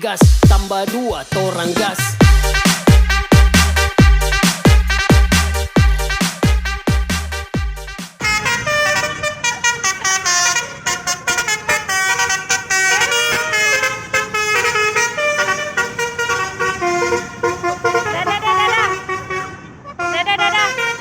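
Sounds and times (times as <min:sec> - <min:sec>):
dance music beat with bass: 0:00.0 - 0:08.2
musical air horn melody: 0:01.9 - 0:21.0.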